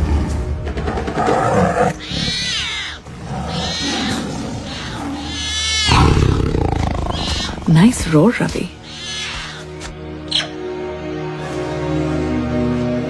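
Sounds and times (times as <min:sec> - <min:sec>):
tiger roaring and growling: 0:00.0 - 0:10.0
animal alarm calls: 0:01.6 - 0:10.6.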